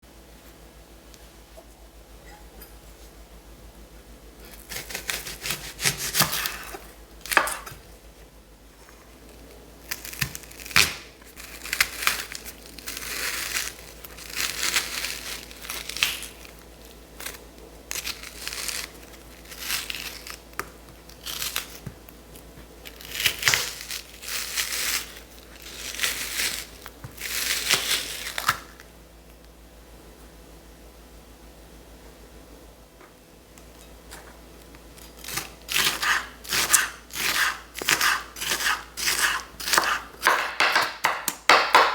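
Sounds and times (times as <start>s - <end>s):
vegetable skin peeled by hand: 4.4s - 7.9s, 9.2s - 28.9s, 34.6s - 41.9s
sharp knocks: 40.3s - 41.9s.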